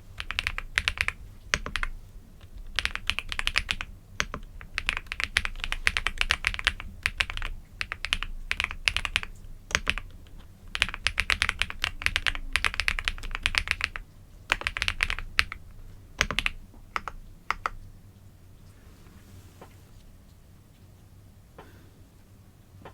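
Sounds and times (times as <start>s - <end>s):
computer keyboard typing: 0.0s - 17.8s.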